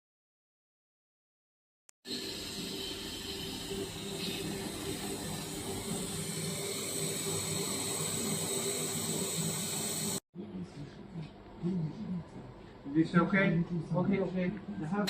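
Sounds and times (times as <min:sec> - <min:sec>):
machinery hum and hiss: 0:02.8 - 0:10.2.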